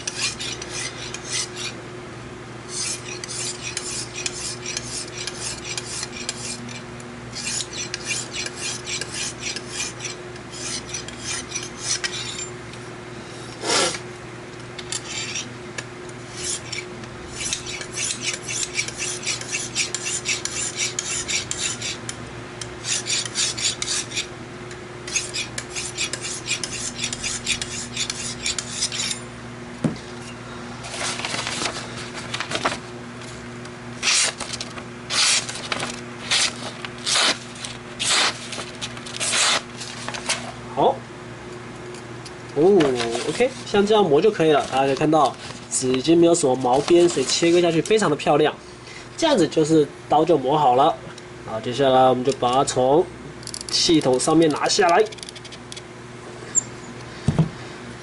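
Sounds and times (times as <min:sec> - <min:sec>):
hone rasping on knife edge: 0:16.3 - 0:24.3, 0:25.1 - 0:29.2.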